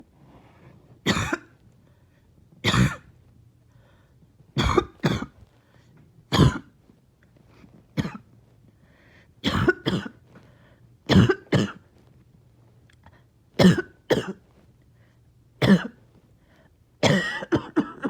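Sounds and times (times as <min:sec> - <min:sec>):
person coughing: 0:01.1 - 0:01.5, 0:02.6 - 0:03.1, 0:04.6 - 0:05.4, 0:06.3 - 0:06.7, 0:08.0 - 0:08.3, 0:09.4 - 0:10.2, 0:11.1 - 0:11.8, 0:13.6 - 0:14.4, 0:15.6 - 0:16.0, 0:17.0 - 0:18.0.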